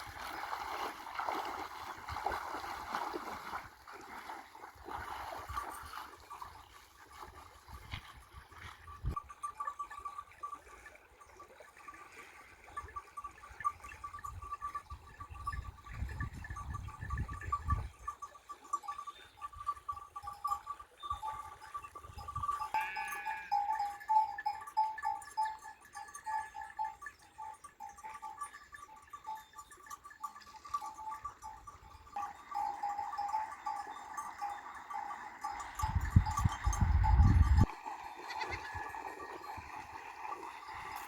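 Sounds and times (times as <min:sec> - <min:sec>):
sheep bleating: 0:38.2 - 0:38.7.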